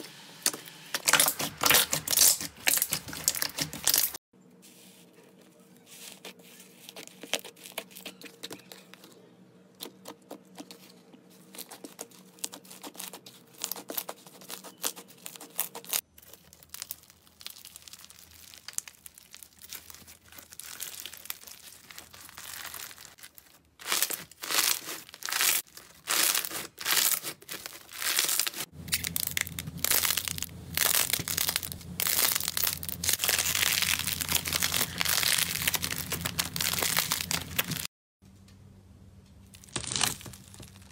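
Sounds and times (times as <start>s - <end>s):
slime crackling and popping: 1.0s - 4.2s, 11.5s - 37.9s, 39.5s - 40.9s.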